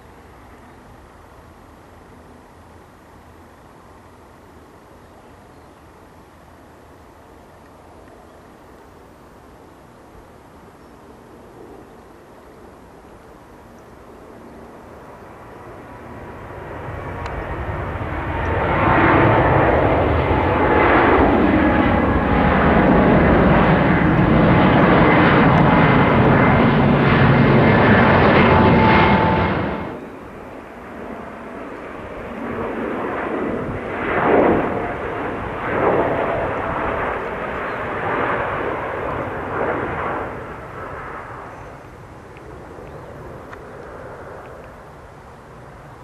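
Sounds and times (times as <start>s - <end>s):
quieter jet rumble: 0.0s - 46.0s
jet engines roaring: 12.5s - 46.0s.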